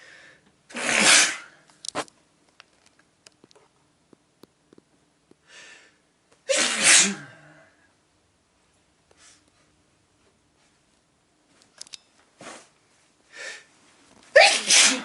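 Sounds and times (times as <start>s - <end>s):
in-breath: 0.0s - 0.5s, 5.4s - 6.0s, 13.3s - 13.7s
person sneezing: 0.7s - 1.6s, 6.5s - 7.6s, 14.3s - 15.0s.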